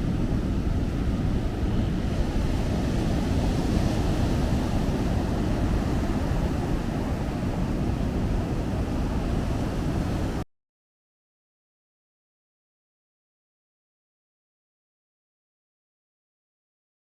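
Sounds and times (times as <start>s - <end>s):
ocean surf on beach: 0.0s - 10.4s
wind rumbling on microphone: 0.0s - 10.4s.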